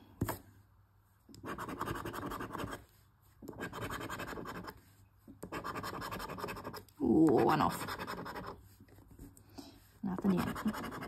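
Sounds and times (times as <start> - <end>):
scratching lottery ticket: 5.5 - 9.1, 10.0 - 11.0.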